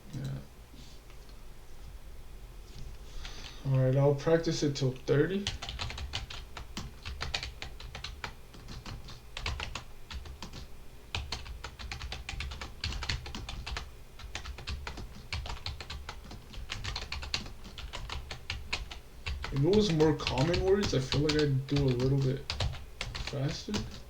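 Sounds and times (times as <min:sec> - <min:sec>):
rapid keyboard typing: 0:05.4 - 0:24.0.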